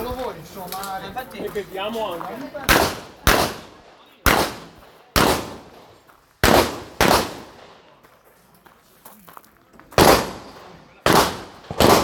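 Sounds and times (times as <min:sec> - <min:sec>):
handgun shots with echo: 0:02.7 - 0:03.7, 0:06.4 - 0:07.6, 0:10.0 - 0:12.0.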